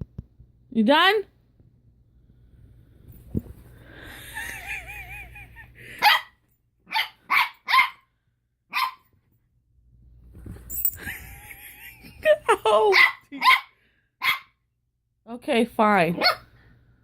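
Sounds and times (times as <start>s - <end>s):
dog barking sharply: 6.9s - 8.0s, 8.7s - 9.0s.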